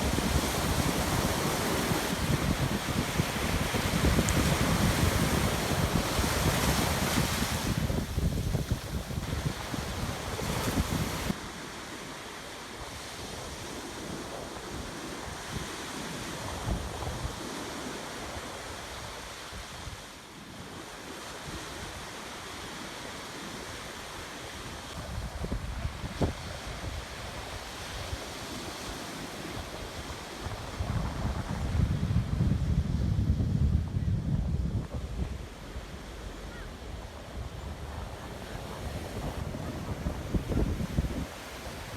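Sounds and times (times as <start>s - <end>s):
wind buffeting microphone: 0.0s - 11.4s, 13.2s - 20.1s, 24.8s - 41.9s
ocean surf washing onto beach: 0.0s - 41.9s.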